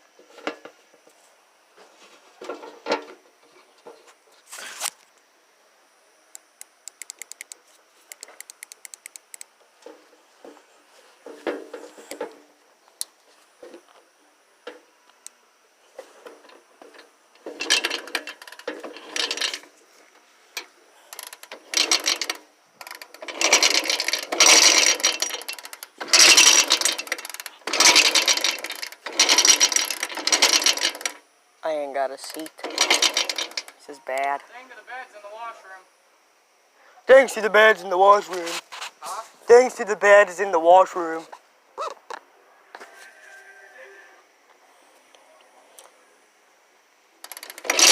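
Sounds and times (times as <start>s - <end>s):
dirt bike kickstarter clatter: 21.2s - 31.2s.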